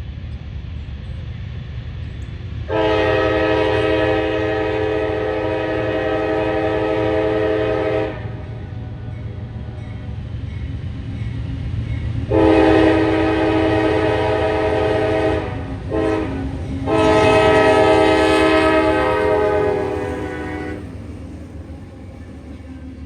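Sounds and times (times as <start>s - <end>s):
passing train rumble: 0.0s - 23.0s
locomotive air horn blasts: 2.7s - 9.8s, 12.3s - 21.0s.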